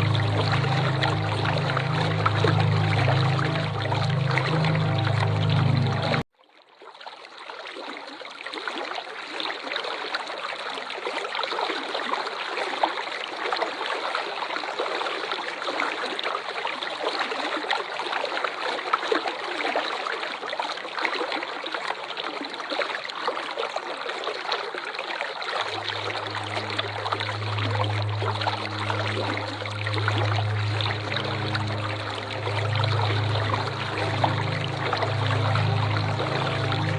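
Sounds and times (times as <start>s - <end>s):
falling water splashing: 0.0s - 6.2s, 25.6s - 36.9s
low steady hum: 0.0s - 6.2s, 25.6s - 36.9s.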